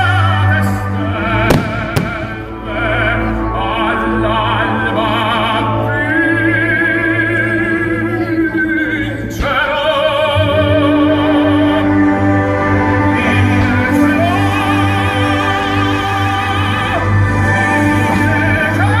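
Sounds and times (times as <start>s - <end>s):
operatic singing: 0.0s - 19.0s
orchestra playing: 0.6s - 6.7s, 10.8s - 18.8s.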